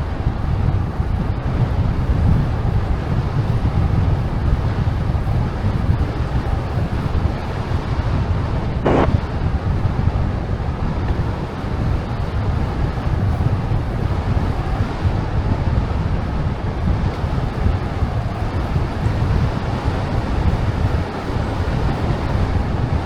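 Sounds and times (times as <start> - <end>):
wind buffeting microphone: 0.0 - 23.0
short higher sound: 8.8 - 9.1.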